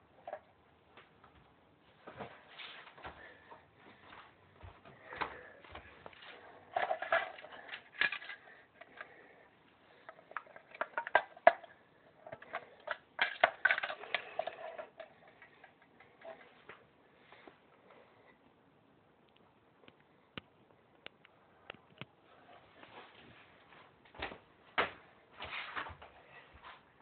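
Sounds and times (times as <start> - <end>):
small hard objects rattling: 6.7 - 9.0, 10.2 - 16.4.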